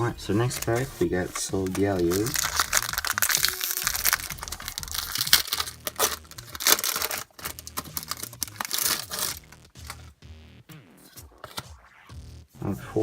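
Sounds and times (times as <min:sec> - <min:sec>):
foil wrapper crinkling and tearing: 0:00.2 - 0:10.0.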